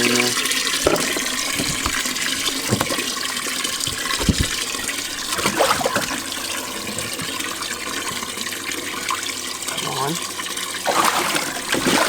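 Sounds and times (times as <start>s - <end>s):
water sloshing in a tank: 0.0s - 12.0s
knocks: 0.8s - 3.2s.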